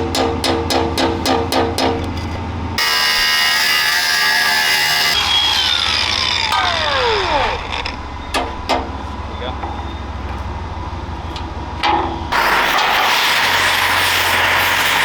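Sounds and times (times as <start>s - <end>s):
angle grinder cutting steel: 2.8s - 8.1s, 12.3s - 15.0s.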